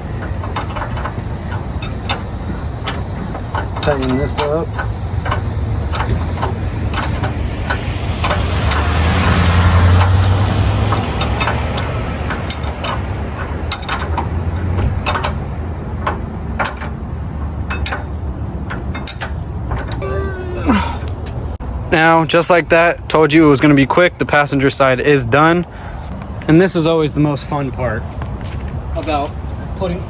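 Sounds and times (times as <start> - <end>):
metallic clicks and clanks: 0.0 - 20.0.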